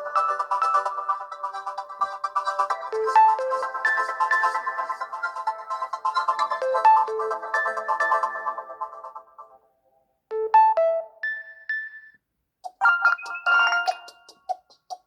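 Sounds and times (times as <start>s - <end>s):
phone ringtones: 10.3s - 12.2s, 12.8s - 14.5s.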